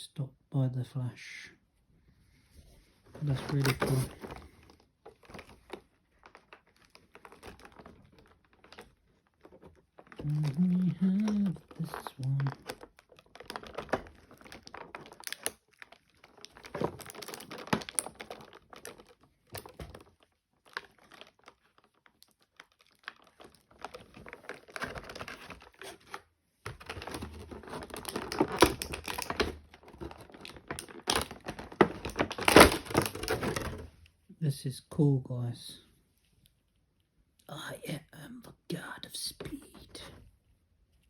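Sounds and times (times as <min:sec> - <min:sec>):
plastic packaging crinkling: 0:03.0 - 0:33.9.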